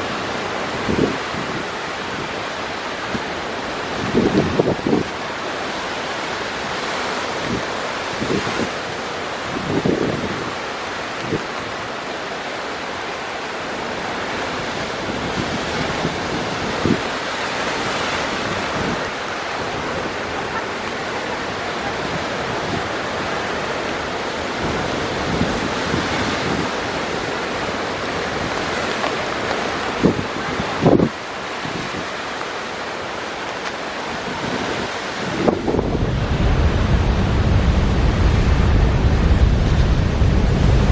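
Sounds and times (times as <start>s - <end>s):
storm surf breaking on rocks: 0.0s - 40.9s
wind buffeting microphone: 0.0s - 40.9s
low thumps: 35.7s - 40.9s.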